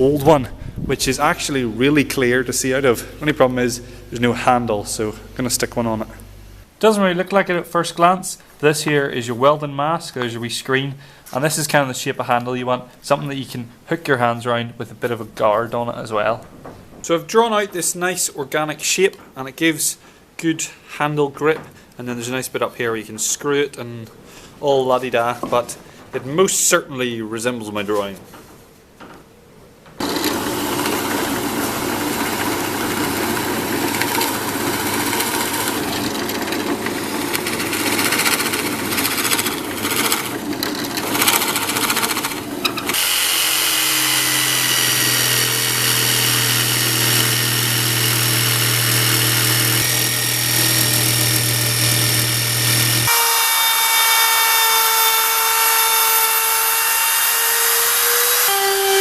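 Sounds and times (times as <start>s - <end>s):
motor whine: 30.0s - 53.7s
power tool cutting wood: 30.0s - 59.0s.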